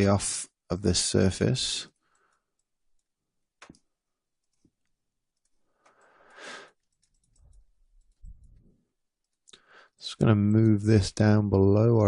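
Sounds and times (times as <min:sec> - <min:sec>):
computer mouse clicks: 0:01.9 - 0:09.6.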